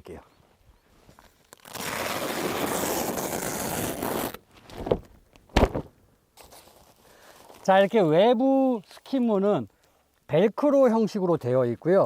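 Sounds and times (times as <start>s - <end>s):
tent fabric rasping: 1.5s - 4.4s.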